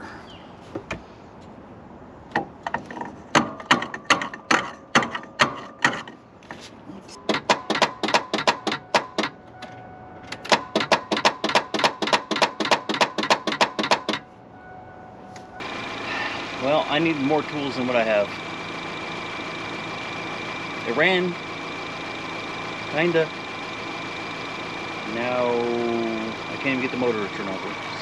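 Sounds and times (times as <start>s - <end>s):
metal-on-metal taps: 2.3s - 6.2s.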